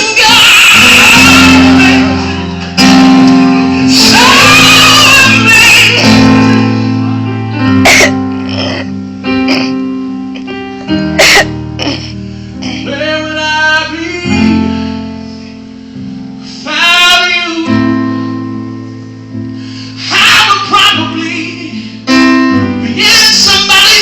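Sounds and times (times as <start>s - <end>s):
singers holding a note: 0.0s - 6.8s
gospel band playing: 0.0s - 24.0s.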